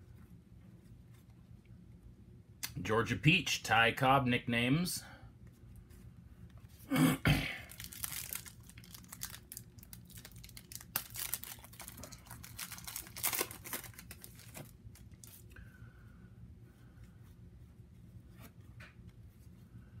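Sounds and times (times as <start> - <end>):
throat clearing: 6.9 - 7.7
foil wrapper crinkling and tearing: 7.6 - 15.5
cards rustling: 7.6 - 15.6.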